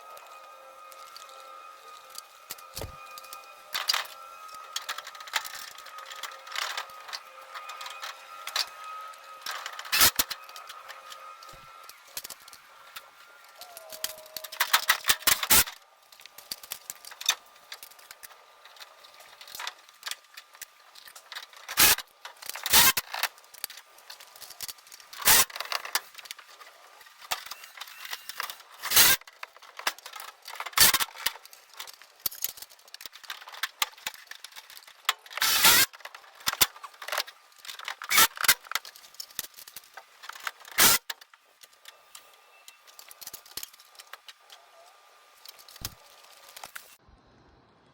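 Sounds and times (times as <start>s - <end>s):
power driver driving screws: 9.5s - 12.5s, 25.2s - 25.9s, 28.0s - 29.2s, 35.3s - 36.7s.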